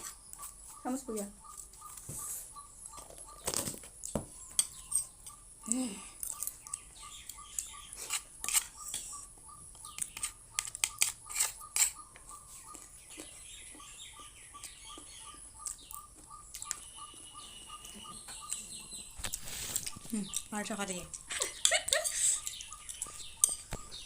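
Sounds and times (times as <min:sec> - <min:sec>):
faint high chirp: 0:00.0 - 0:24.0
cutlery clinking against plate: 0:21.6 - 0:24.0.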